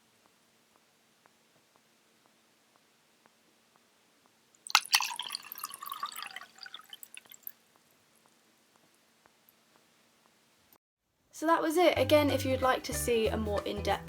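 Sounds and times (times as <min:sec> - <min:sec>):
faint dripping ticks: 0:04.5 - 0:08.9.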